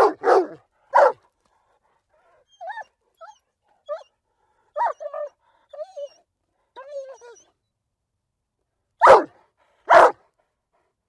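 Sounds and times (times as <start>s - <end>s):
dog barking: 0.0s - 1.2s, 9.0s - 10.2s.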